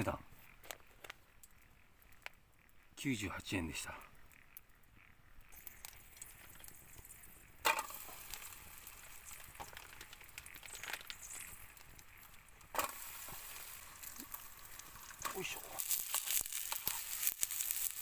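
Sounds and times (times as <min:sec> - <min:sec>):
food sizzling in a hot pan: 0:05.5 - 0:18.0.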